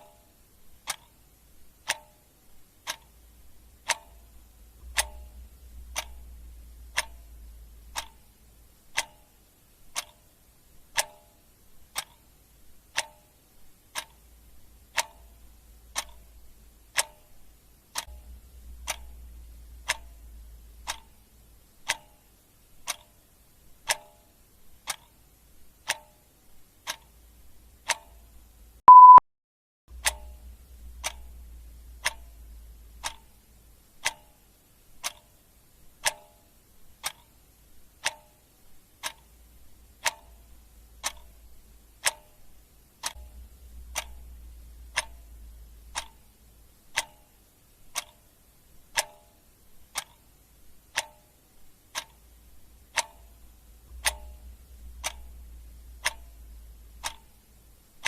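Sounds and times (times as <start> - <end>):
clock ticking: 0.0 - 29.2, 29.9 - 58.0
short electronic beep: 28.9 - 29.2.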